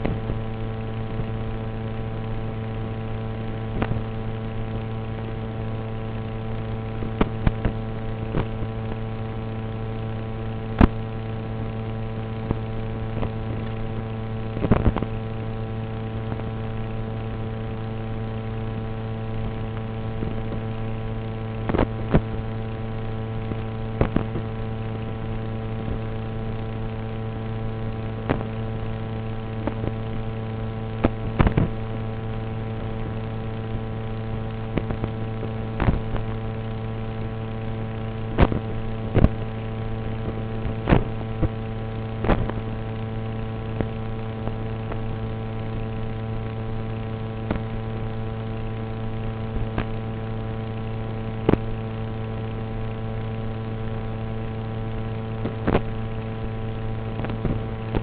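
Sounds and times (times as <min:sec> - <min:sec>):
steady buzzing hum: 0:00.0 - 0:58.0
sharp clicks and crackles: 0:03.6 - 0:09.3, 0:10.6 - 0:11.2, 0:19.6 - 0:25.2, 0:28.0 - 0:33.6, 0:34.5 - 0:52.6, 0:53.2 - 0:58.0.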